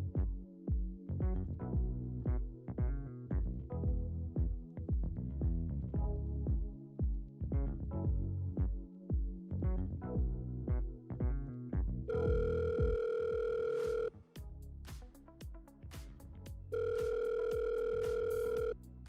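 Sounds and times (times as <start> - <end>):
instrumental pop music: 6.5 - 19.0
electronic telephone ring tone: 12.1 - 14.1, 16.7 - 18.8.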